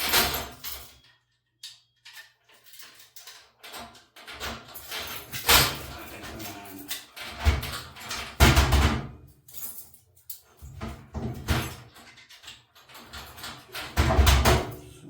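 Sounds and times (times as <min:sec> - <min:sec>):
keys jangling on a ring: 0:00.0 - 0:01.2, 0:02.1 - 0:08.4, 0:09.3 - 0:10.7
key rattling in a metal lock: 0:00.0 - 0:14.9.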